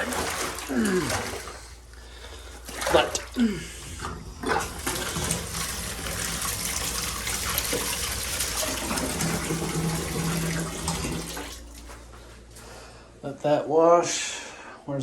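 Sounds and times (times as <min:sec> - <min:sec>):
water gushing into a tub: 0:00.0 - 0:12.0
low steady hum: 0:00.0 - 0:15.0.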